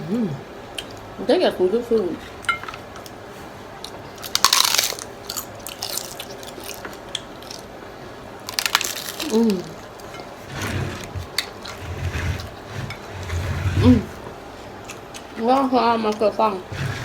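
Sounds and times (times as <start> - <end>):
crunchy bites into tacos: 4.2 - 7.7.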